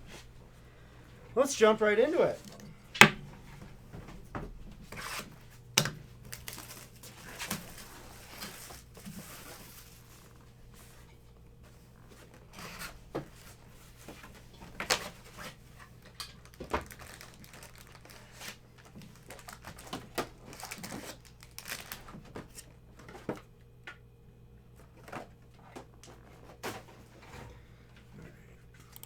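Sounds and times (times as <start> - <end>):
sharp knocks: 3.0 - 4.5
plastic wrap crinkling: 6.2 - 10.4, 16.0 - 22.4.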